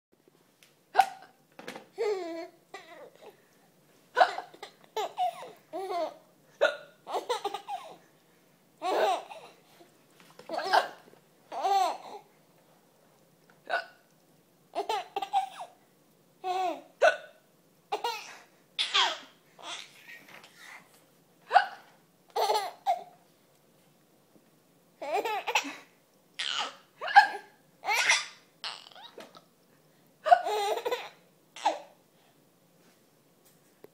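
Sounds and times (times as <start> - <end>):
woman hiccuping: 1.0 - 1.4, 13.7 - 14.0, 17.0 - 17.4, 21.5 - 21.9
baby giggling: 4.2 - 6.2, 7.1 - 8.0, 8.8 - 9.6, 10.5 - 12.2, 14.8 - 15.7, 21.5 - 23.1, 25.0 - 29.4, 30.3 - 31.9.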